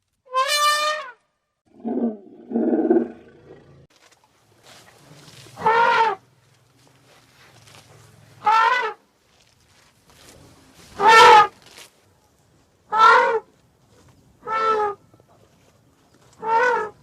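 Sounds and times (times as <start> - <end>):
elephant-like trumpeting calls: 5.6 - 6.2, 8.4 - 9.0.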